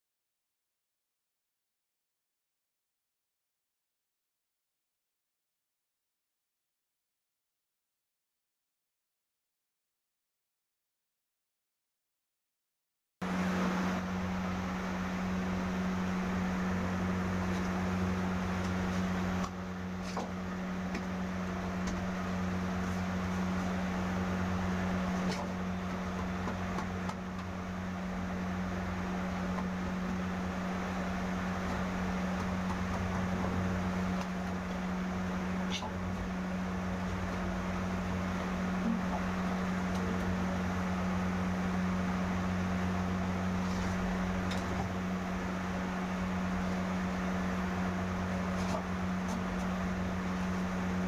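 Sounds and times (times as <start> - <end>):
low machine hum with hiss: 13.2 - 51.0.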